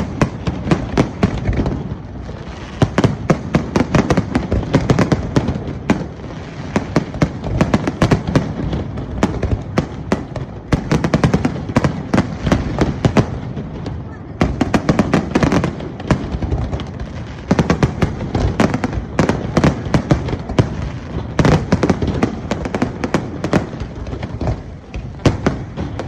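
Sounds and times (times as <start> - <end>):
continuous rumble: 0.0 - 26.0
fireworks bangs and crackles: 0.0 - 26.0.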